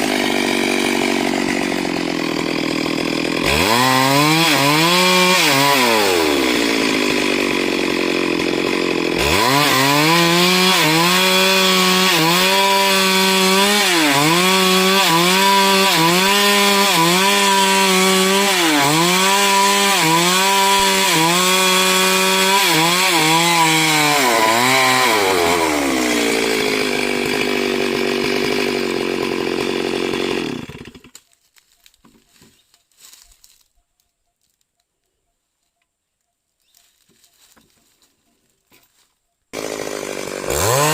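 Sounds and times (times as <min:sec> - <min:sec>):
chainsaw engine revving: 0:00.0 - 0:31.1, 0:39.6 - 0:40.9.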